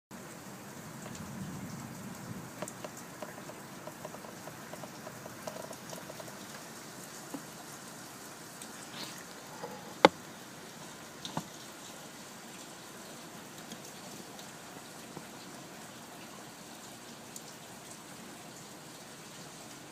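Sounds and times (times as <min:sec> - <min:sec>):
steady rain: 0:00.1 - 0:19.9
drips pattering: 0:01.9 - 0:07.5.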